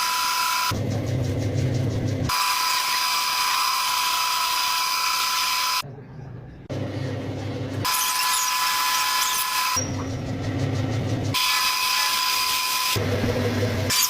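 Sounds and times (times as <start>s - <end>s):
low hum: 0.7s - 2.7s, 5.8s - 7.9s, 9.8s - 11.8s, 13.0s - 13.9s
power tools whining: 2.3s - 5.8s, 7.5s - 14.0s.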